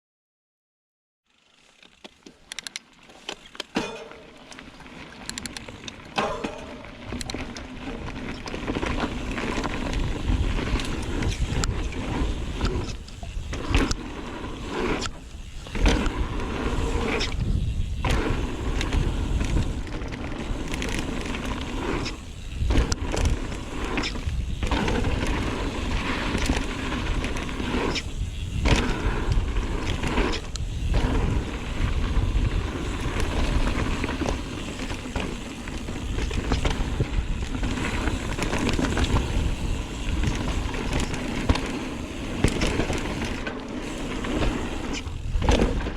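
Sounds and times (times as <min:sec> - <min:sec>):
bike clicks: 0:01.3 - 0:45.9
bike rattling: 0:01.3 - 0:45.9
tyres rolling over dirt: 0:03.2 - 0:45.9
wind on microphone: 0:15.4 - 0:19.8, 0:21.4 - 0:34.8.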